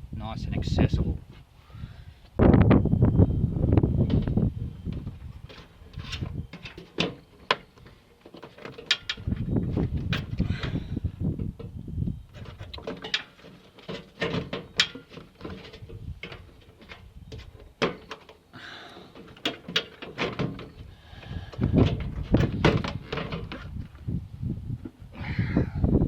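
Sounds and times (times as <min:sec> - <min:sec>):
scraping and creaking: 0:04.9 - 0:18.4, 0:19.0 - 0:24.1
tools clicking and knocking: 0:12.4 - 0:18.4.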